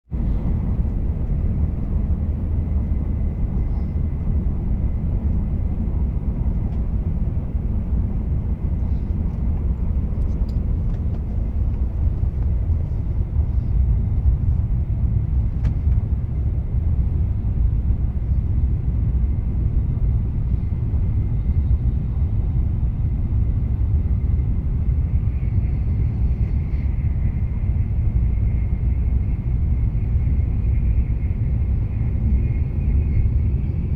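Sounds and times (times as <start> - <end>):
train rumble: 0.0 - 33.9
faint high whine: 24.1 - 33.9.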